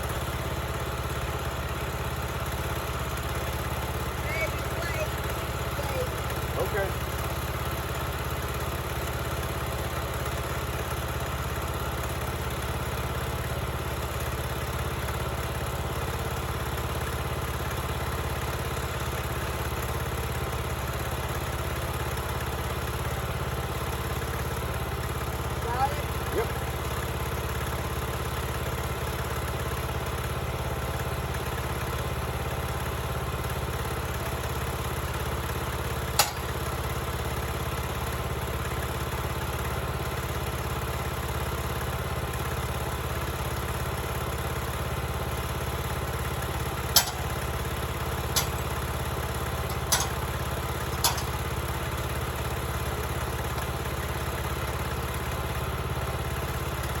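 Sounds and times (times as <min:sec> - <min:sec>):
sawmill engine running: 0:00.0 - 0:08.8, 0:24.0 - 0:28.0, 0:35.2 - 0:39.0, 0:43.6 - 0:57.0
sharp knocks: 0:36.2 - 0:36.6, 0:47.0 - 0:47.4, 0:51.0 - 0:51.4.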